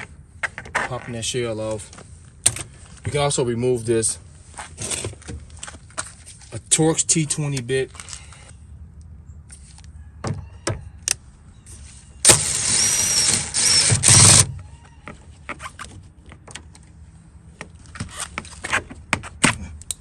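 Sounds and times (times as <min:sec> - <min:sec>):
power driver running: 0:12.2 - 0:14.5.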